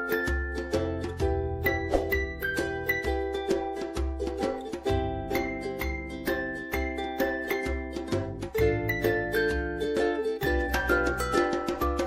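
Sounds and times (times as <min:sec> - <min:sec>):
cheerful ukulele music with bass: 0:00.0 - 0:12.0.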